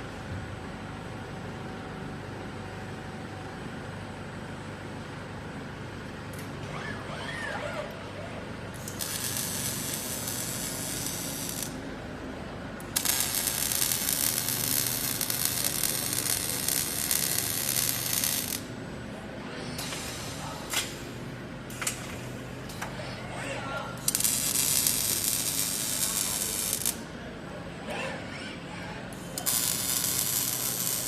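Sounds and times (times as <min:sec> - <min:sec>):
low machine hum: 0:00.0 - 0:31.0
welding arc crackling and hissing: 0:08.8 - 0:11.8, 0:12.9 - 0:18.7, 0:24.0 - 0:27.0, 0:29.4 - 0:31.0.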